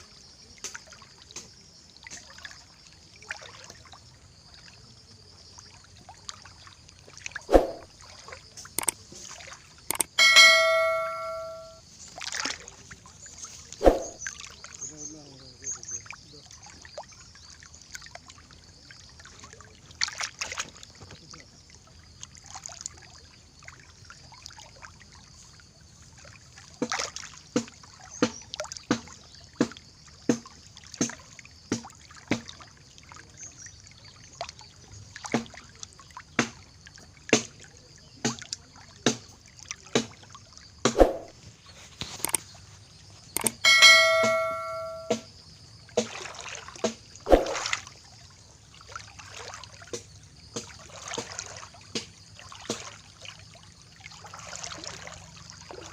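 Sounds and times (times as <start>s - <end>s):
floodwater trickling and pouring: 0.0s - 44.8s, 45.6s - 55.9s
sharp clicks: 9.9s - 11.4s, 43.4s - 43.6s
brief ringing tone: 10.2s - 11.8s, 43.4s - 45.3s.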